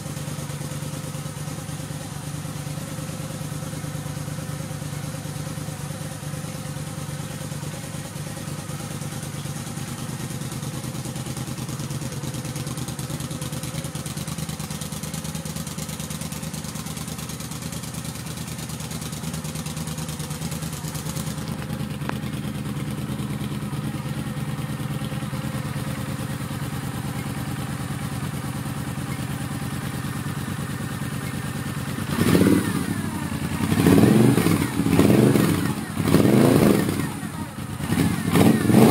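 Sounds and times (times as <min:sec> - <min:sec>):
motorcycle engine idling: 0:00.0 - 0:38.9
motorcycle engine revving: 0:00.0 - 0:38.9.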